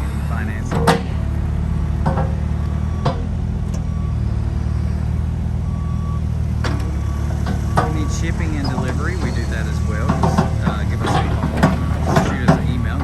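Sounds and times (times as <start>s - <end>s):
engine rumbling: 0.0s - 13.0s.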